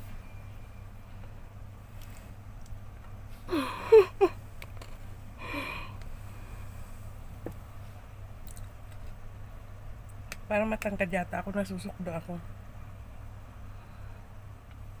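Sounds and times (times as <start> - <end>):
low steady hum: 0.0 - 15.0
woman's breathy exhale: 5.4 - 6.0.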